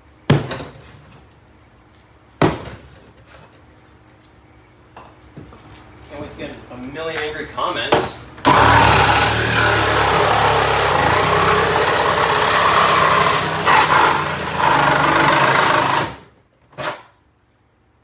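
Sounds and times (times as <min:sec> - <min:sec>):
electric power tool running: 0:08.5 - 0:16.3.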